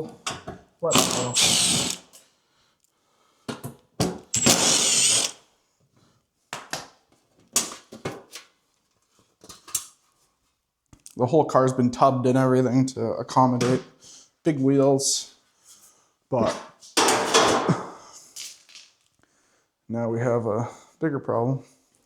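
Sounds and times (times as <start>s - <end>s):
cordless power tool whining: 0.9s - 2.0s, 4.4s - 5.4s.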